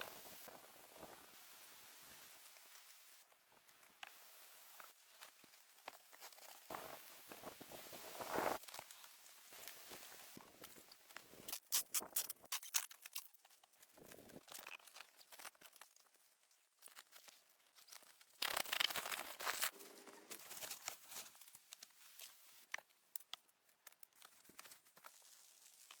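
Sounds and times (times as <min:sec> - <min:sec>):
rustling and crinkling: 0:00.0 - 0:26.0.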